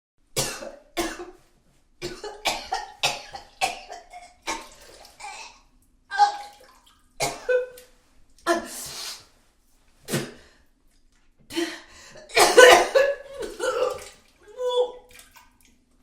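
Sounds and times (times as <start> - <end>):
person retching and vomiting: 2.0 - 6.6, 7.2 - 7.8, 12.3 - 14.2.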